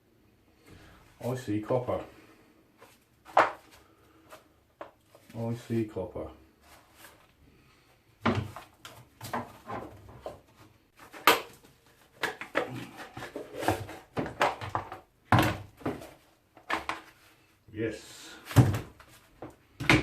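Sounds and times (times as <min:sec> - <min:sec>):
plastic parts knocking and scraping: 0:08.2 - 0:17.3.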